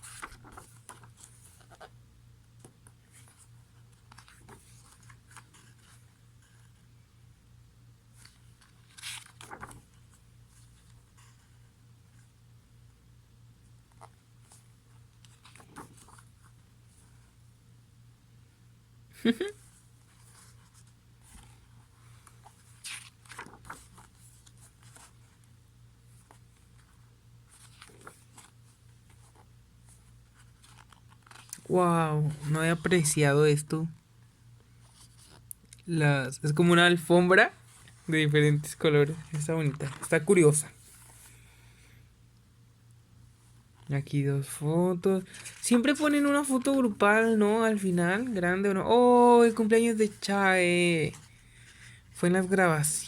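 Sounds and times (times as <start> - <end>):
pages rustling and turning: 0.0 - 6.9, 8.1 - 11.7, 13.9 - 17.4, 19.8 - 33.2, 34.7 - 35.5, 37.6 - 41.5, 45.2 - 48.4
faint steady hum: 0.0 - 53.0.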